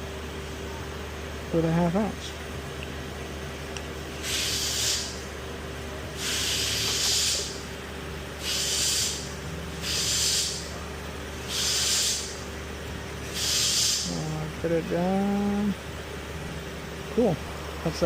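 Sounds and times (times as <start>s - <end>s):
low engine hum: 0.0s - 18.0s
pressurized can hissing: 8.4s - 9.2s.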